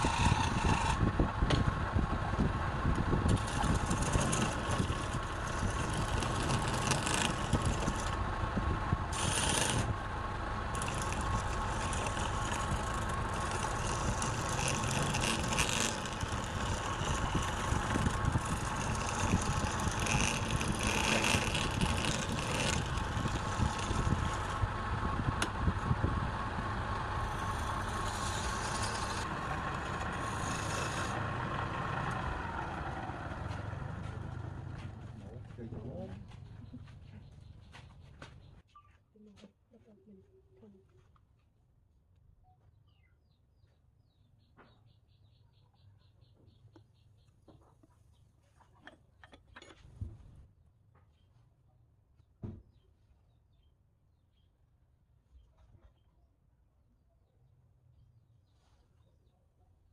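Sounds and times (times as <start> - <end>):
lathe motor whine: 0.0 - 1.2, 9.1 - 34.4
tool scraping spinning wood: 0.0 - 35.1.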